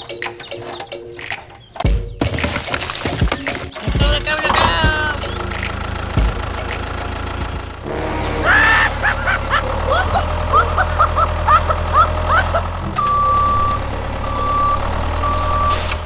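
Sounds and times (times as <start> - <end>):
vehicle engine humming: 2.7 - 16.0
reversing alarm beeping: 7.8 - 16.0.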